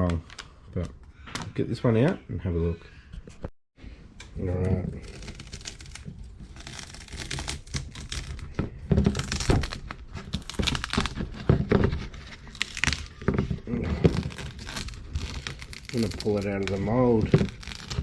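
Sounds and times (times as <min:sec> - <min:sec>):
plastic film crinkling: 0:04.9 - 0:18.0.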